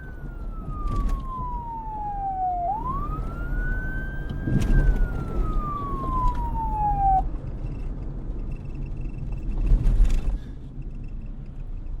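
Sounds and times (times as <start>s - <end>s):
police siren falling tone: 0.0s - 7.3s.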